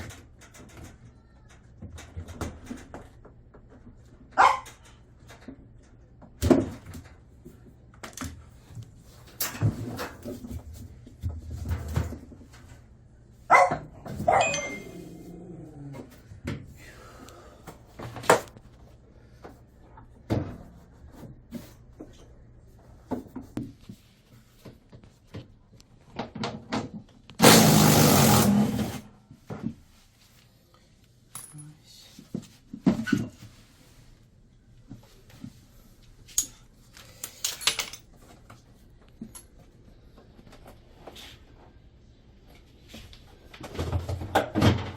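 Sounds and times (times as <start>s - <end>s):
tools and metal parts clattering: 14.0s - 15.0s, 31.3s - 31.7s, 36.2s - 39.8s
loud burst of noise: 27.4s - 29.0s.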